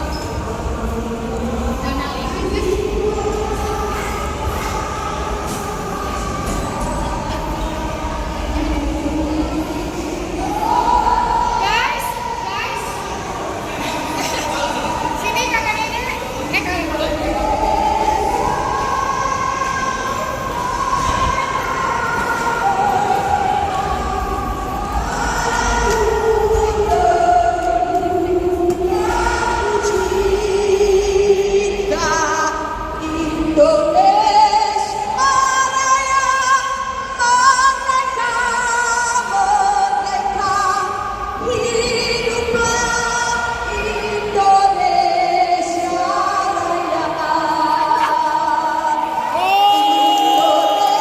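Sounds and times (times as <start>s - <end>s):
singing with music over loudspeakers: 0.0s - 51.0s.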